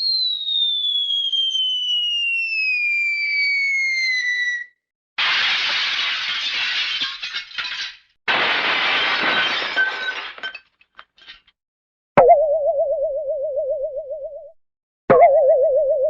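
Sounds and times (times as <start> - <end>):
glass shattering: 5.2 - 11.6
glass pieces tinkling: 5.7 - 8.0, 8.8 - 11.5.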